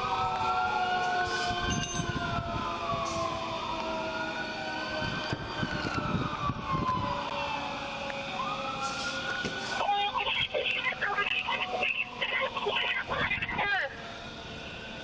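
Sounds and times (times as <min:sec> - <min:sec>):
low sinking siren tone: 0:00.0 - 0:12.7
rising and falling siren: 0:00.0 - 0:15.0.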